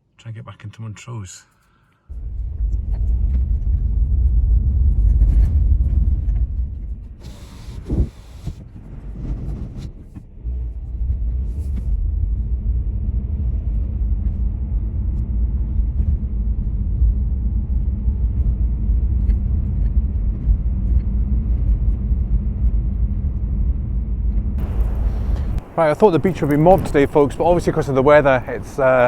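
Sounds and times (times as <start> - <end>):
car engine and road noise: 2.1 - 15.3, 24.6 - 29.0.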